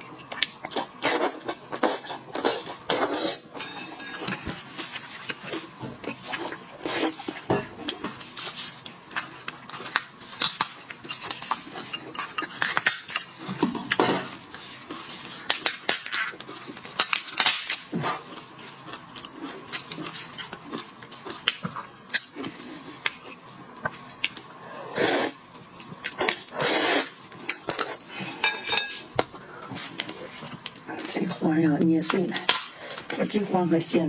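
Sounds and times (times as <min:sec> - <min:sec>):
lobster shell cracking: 0:15.4 - 0:17.9.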